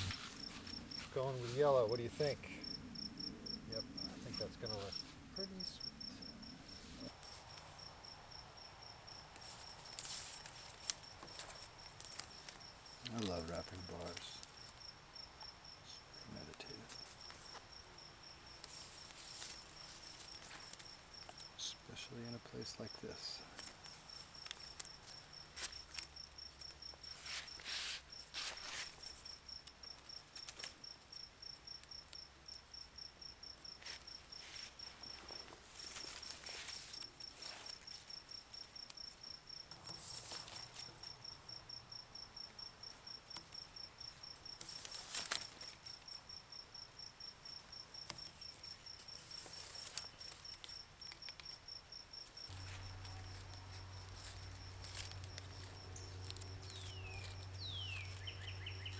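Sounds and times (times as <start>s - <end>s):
crickets chirping: 0.0s - 58.9s
soft rustling swishes: 27.2s - 29.0s.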